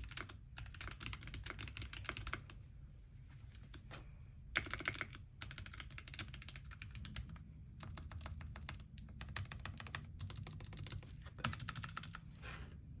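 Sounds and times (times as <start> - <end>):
mechanical keyboard typing: 0.0 - 2.6, 4.6 - 12.3.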